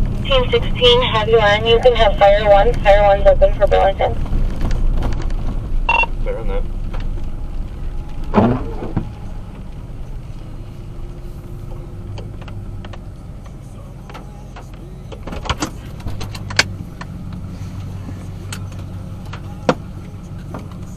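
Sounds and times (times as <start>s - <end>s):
engine humming: 0.0s - 20.9s
sharp clicks and knocks: 12.1s - 17.1s.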